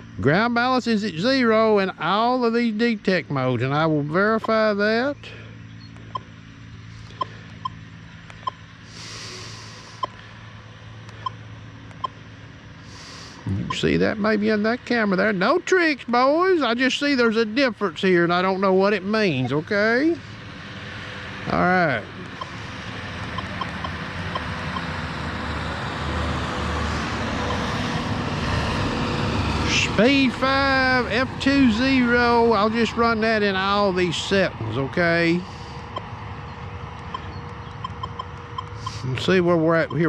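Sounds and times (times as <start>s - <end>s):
steady low hum: 0.0s - 40.0s
vehicle engine and road noise: 0.0s - 40.0s
short high keypad beeps: 37.1s - 39.0s.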